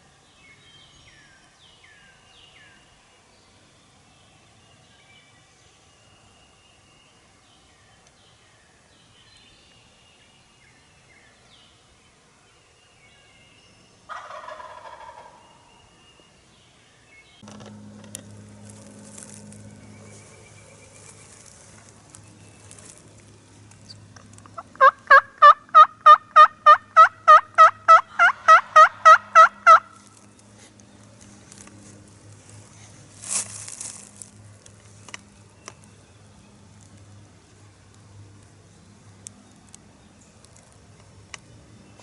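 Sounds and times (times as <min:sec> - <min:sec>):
turkey yelping: 0:24.6 - 0:29.9
short rustle: 0:30.5 - 0:35.0.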